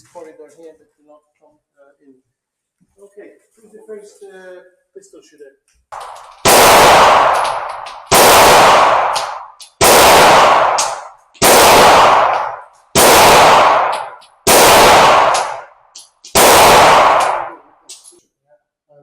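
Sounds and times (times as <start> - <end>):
echoing gunshots: 6.0 - 17.9.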